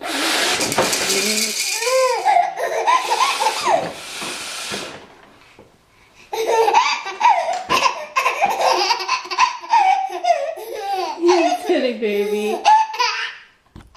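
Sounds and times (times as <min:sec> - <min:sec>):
baby laughing: 0:01.2 - 0:03.8, 0:06.3 - 0:13.5.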